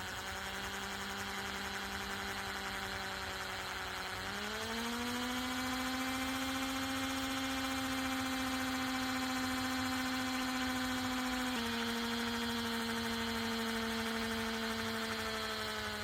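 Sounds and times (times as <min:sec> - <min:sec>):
electric drill whining: 0:00.0 - 0:16.0.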